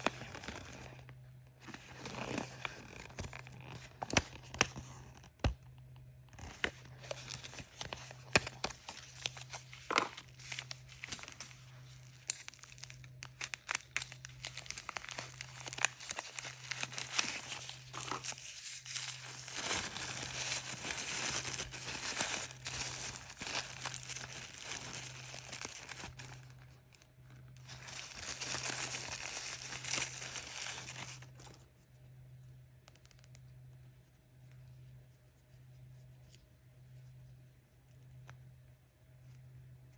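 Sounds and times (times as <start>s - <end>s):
packaging crumpled and torn: 0.0s - 5.5s, 6.3s - 31.6s.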